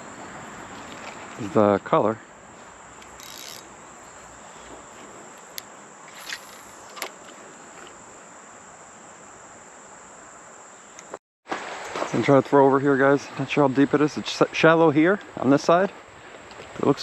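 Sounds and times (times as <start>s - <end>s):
insects trilling: 0.0s - 11.2s.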